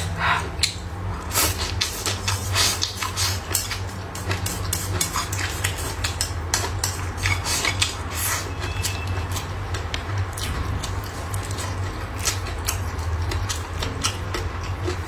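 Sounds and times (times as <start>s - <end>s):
utensils clicking on plates: 2.8s - 8.0s
steady low hum: 9.6s - 15.0s.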